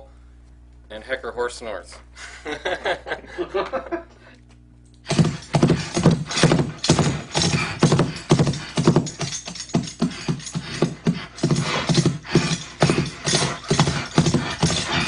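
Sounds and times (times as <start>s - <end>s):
horse hoofbeats clip-clop: 5.1s - 15.0s.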